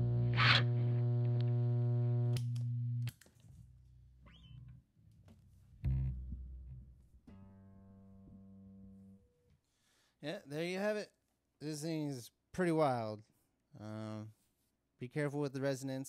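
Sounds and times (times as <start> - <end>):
distorted bass guitar: 0.0 - 3.1, 4.2 - 9.2.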